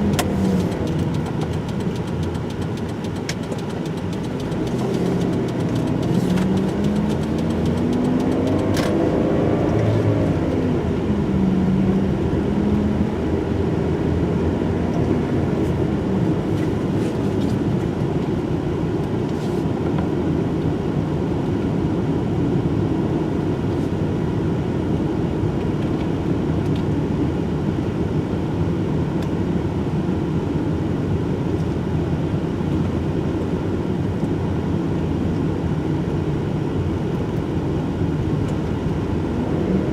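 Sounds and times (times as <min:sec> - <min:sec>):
tyre noise: 0:00.0 - 0:09.0
car engine accelerating: 0:00.0 - 0:18.1, 0:38.0 - 0:39.9.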